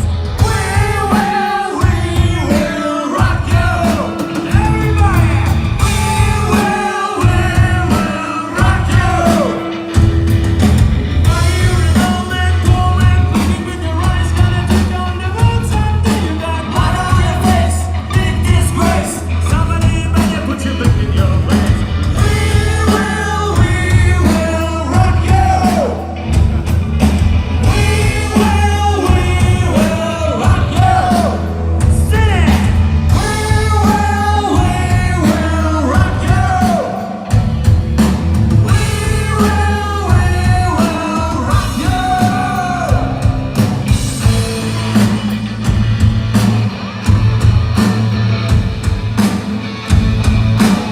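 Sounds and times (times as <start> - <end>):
loud rock music: 0.0 - 50.9
person singing: 0.4 - 9.9, 11.3 - 26.2, 27.6 - 37.4, 38.6 - 43.4.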